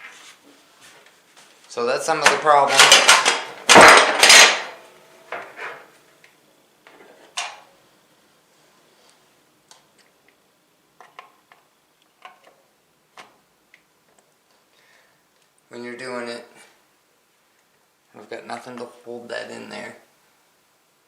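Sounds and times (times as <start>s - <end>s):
metal clattering and rattling: 2.7s - 4.8s.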